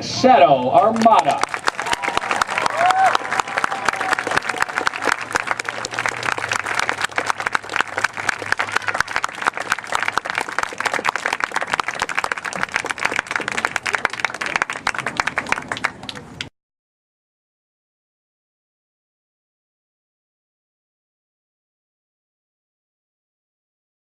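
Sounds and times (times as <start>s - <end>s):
crowd applauding: 0.6s - 16.5s.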